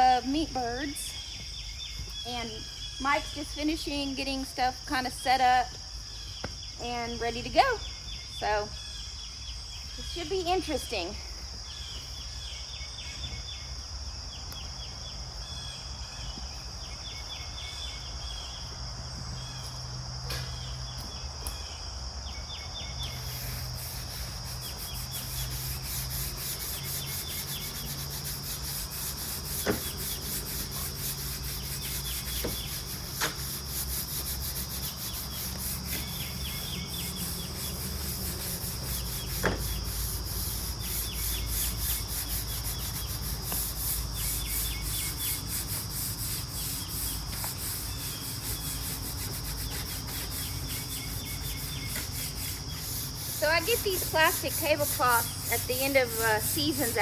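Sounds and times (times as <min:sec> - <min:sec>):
insects chirring: 0:00.0 - 0:57.0
rough rubbing scraping noise: 0:23.0 - 0:57.0.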